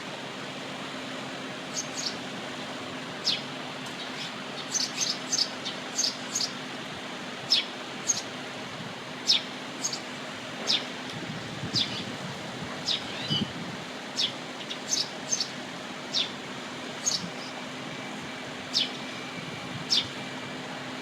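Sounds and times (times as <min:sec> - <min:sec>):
swallows calling: 0:01.7 - 0:02.2, 0:03.2 - 0:06.6, 0:07.5 - 0:08.3, 0:09.2 - 0:10.9, 0:11.7 - 0:12.2, 0:12.8 - 0:13.5, 0:14.1 - 0:17.6, 0:18.7 - 0:19.0, 0:19.9 - 0:20.2.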